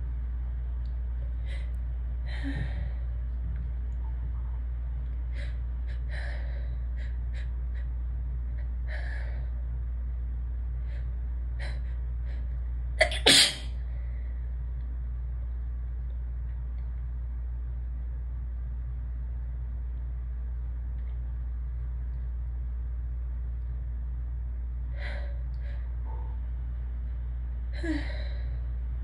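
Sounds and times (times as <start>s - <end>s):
steady low hum: 0.0s - 29.0s
sharp sneeze: 13.0s - 13.7s.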